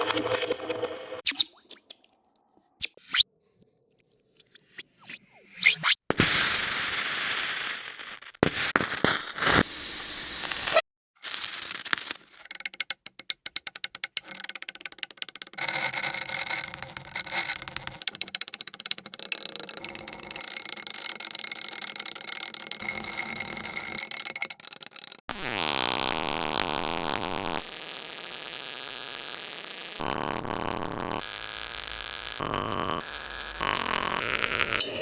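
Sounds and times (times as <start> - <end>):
crackle: 1.2 - 12.6, 25.4 - 35.0
fast run of clicks: 11.7 - 25.2.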